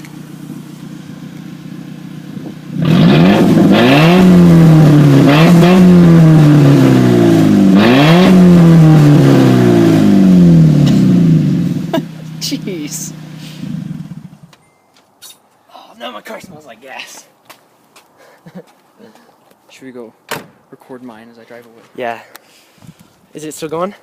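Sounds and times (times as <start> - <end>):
car engine revving without exhaust: 0.0 - 14.4.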